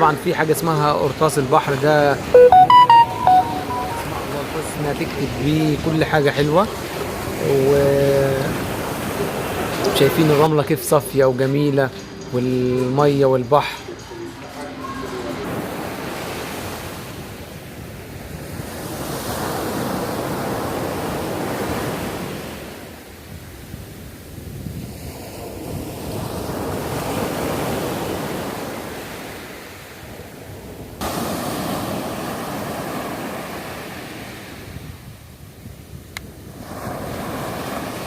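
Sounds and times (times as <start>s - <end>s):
surf breaking on a beach: 15.4s - 35.2s, 36.3s - 38.0s.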